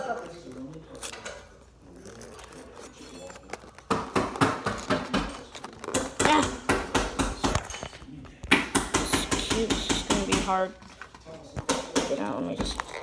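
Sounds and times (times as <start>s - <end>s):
plastic packaging clacking and knocking: 2.9s - 13.0s.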